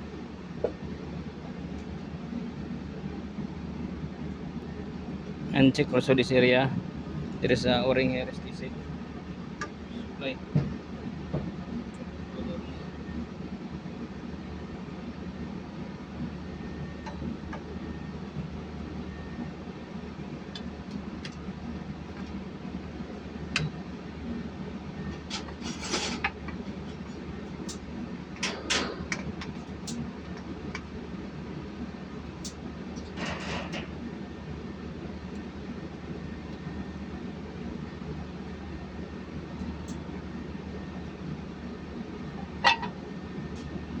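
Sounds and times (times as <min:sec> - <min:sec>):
low machinery hum: 0:00.0 - 0:44.0
tools scraping: 0:25.4 - 0:26.3.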